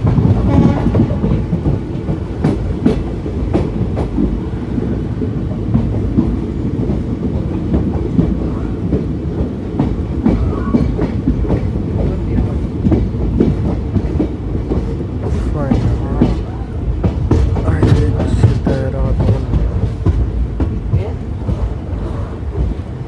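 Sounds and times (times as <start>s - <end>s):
train low rumble: 0.0s - 23.0s
wheels clicking over rail joints: 0.0s - 23.0s.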